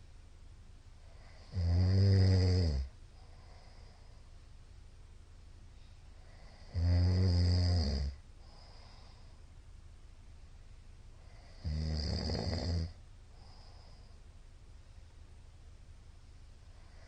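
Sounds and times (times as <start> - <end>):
man snoring loudly: 1.2 - 2.9, 6.4 - 8.2, 11.4 - 13.0.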